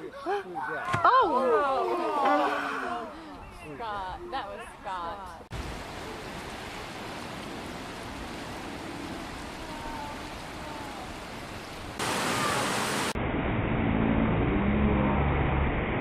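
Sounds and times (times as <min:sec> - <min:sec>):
flowing water rushing: 0:05.5 - 0:13.2
low rumble: 0:13.2 - 0:16.0.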